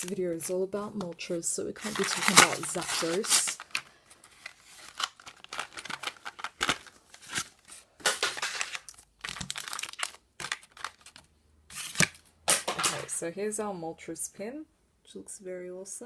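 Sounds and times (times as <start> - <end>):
plastic blister packaging crinkling: 0.0 - 13.0
cardboard tearing: 1.8 - 12.2.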